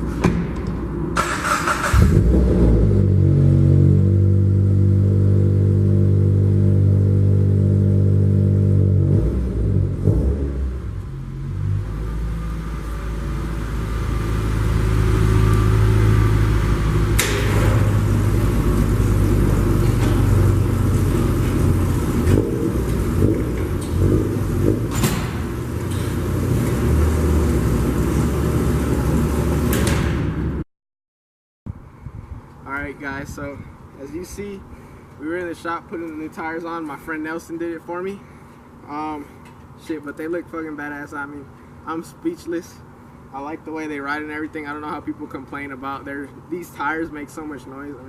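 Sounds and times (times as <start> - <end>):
car engine running: 12.7 - 29.8
sharp engine knocks: 17.1 - 18.5, 22.2 - 26.8.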